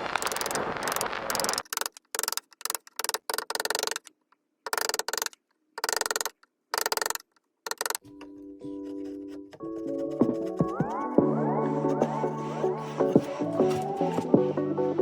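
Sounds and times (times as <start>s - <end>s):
music: 8.1s - 15.0s
hand tool rasping wood: 8.6s - 14.6s.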